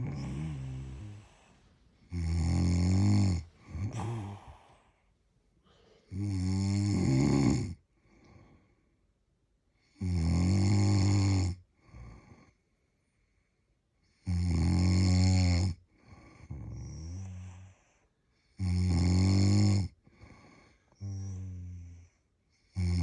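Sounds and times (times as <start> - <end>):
loud snoring: 0.0 - 1.4, 2.1 - 4.8, 6.1 - 7.8, 10.0 - 12.4, 14.2 - 17.6, 18.6 - 20.4, 21.0 - 21.9, 22.7 - 23.0
quiet breathing: 0.0 - 7.0, 7.6 - 9.1, 11.7 - 14.1, 15.8 - 18.6, 19.9 - 22.8.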